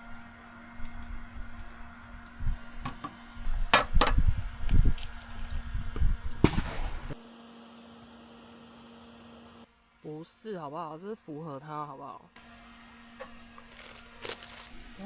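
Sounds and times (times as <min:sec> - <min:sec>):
low rumbling handling noise: 0:00.7 - 0:07.2.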